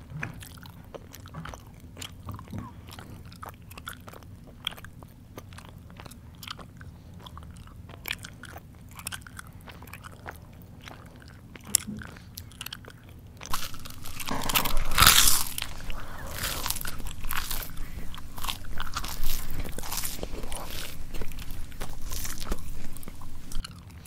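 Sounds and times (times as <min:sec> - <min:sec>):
person chewing crunchy food: 0:00.0 - 0:24.0
mouth clicks: 0:13.5 - 0:23.6.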